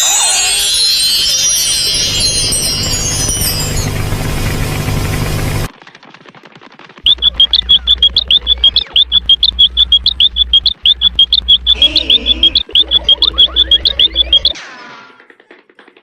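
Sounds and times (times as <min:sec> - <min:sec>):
fast high chirps: 0:00.0 - 0:04.2, 0:07.1 - 0:14.6
faint rapid ticking: 0:07.0 - 0:14.6.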